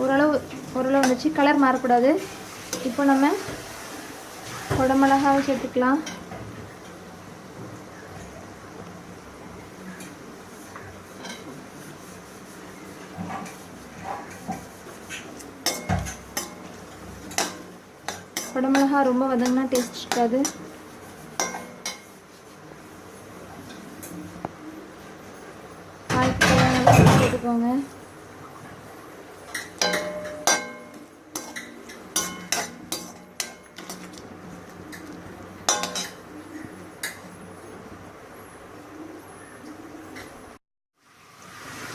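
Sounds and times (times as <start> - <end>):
spatula stirring vegetables: 0.0 - 24.4, 28.1 - 38.0
metal utensil scraping a pan: 13.2 - 22.2, 29.5 - 34.2, 35.6 - 36.2.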